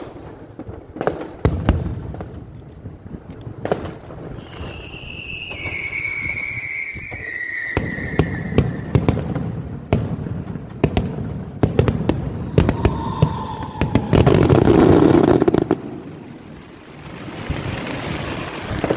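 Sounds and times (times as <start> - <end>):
firework crackling barrage: 0.0 - 18.9
fireworks bangs: 0.0 - 18.9
falling firework whistles: 3.8 - 9.5, 12.3 - 16.3, 17.3 - 18.9.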